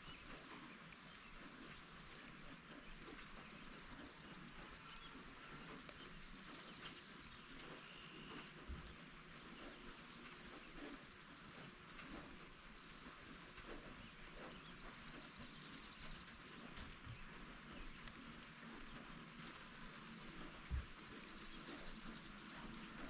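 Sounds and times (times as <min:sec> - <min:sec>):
drips and ticks: 0:00.0 - 0:23.0
faint steady rain: 0:00.0 - 0:23.0.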